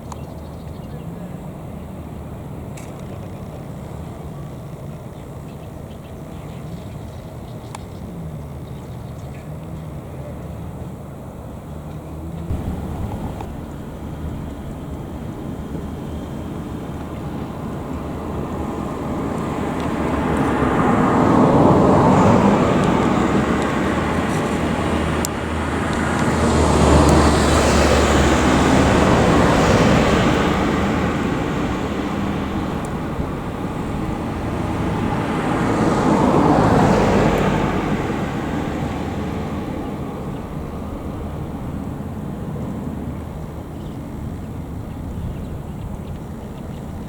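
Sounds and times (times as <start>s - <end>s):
vehicles passing: 9.6s - 47.0s.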